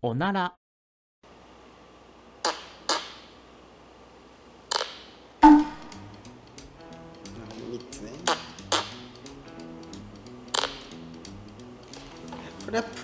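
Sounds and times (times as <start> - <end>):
fart sound effect: 5.4 - 6.1
loud pitched hit: 5.4 - 6.2
quiet background music: 5.4 - 13.0.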